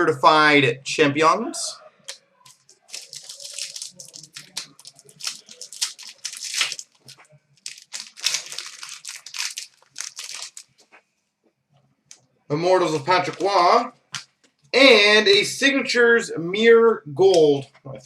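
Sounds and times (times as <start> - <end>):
card pack wrappers tearing: 2.5 - 10.8.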